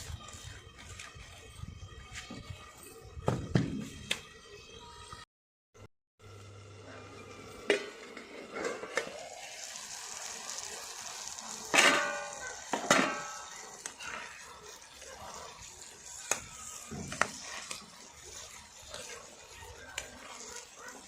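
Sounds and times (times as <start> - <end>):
food sizzling in a pan: 6.4 - 21.0
metal spoon scraping a pan: 11.0 - 21.0.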